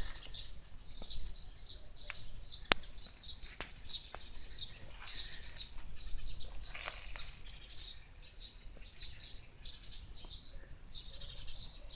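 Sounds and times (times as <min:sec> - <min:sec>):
songbirds chirping: 0:00.0 - 0:11.9.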